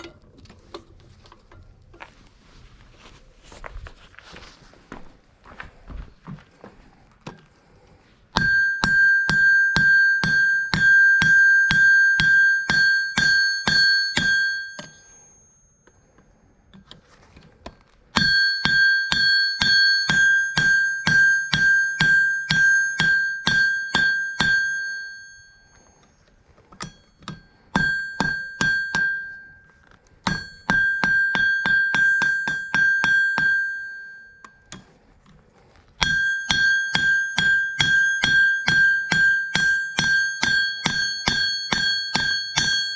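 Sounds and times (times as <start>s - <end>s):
hammer blows on an anvil: 8.3s - 16.0s, 18.2s - 25.9s, 26.8s - 34.6s, 36.0s - 42.9s.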